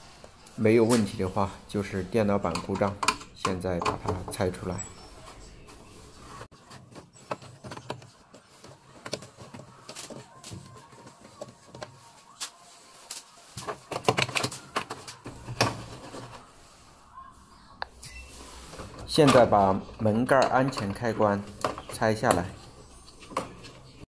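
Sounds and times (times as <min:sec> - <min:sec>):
hand tools clicking and knocking: 0:02.2 - 0:05.0, 0:18.8 - 0:23.9
plastic parts rattling: 0:06.8 - 0:12.0, 0:13.6 - 0:16.5.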